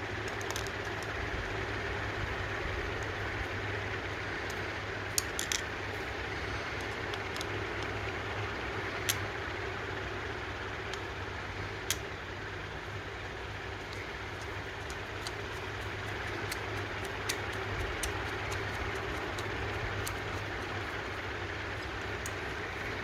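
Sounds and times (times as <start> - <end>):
workshop hum: 0.0 - 23.0
small metal parts clicking: 0.2 - 1.2, 5.2 - 5.7, 13.8 - 21.2, 21.8 - 23.0.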